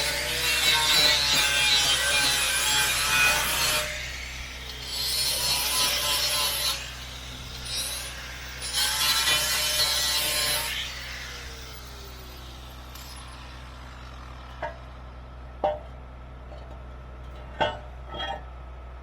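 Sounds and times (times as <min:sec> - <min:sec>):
grinder grinding metal: 0:00.0 - 0:14.8.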